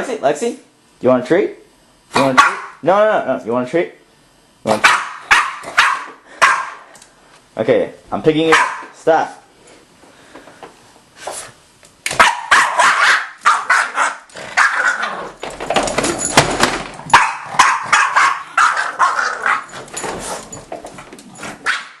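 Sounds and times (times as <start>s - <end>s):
dog barking rapidly: 2.2s - 2.8s, 4.7s - 6.9s, 8.4s - 9.0s, 12.1s - 15.2s, 17.1s - 19.7s, 21.6s - 22.0s.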